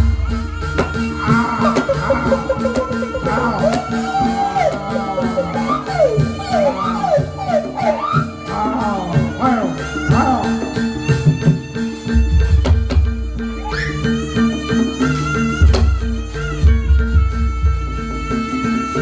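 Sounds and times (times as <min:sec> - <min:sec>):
steady percussion beat: 0:00.0 - 0:19.0
high swooping melody: 0:00.2 - 0:07.8.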